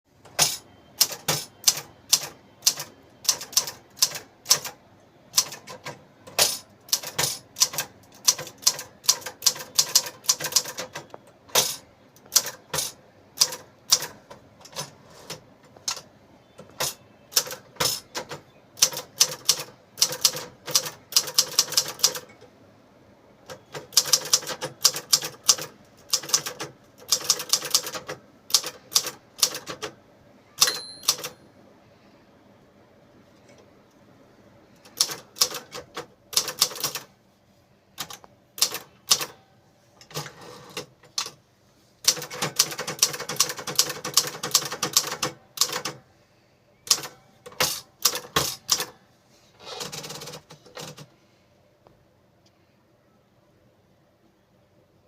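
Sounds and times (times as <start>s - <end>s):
typewriter key strikes: 0.3s - 4.7s, 5.3s - 14.1s, 16.6s - 22.3s, 30.6s - 31.4s, 46.9s - 48.9s.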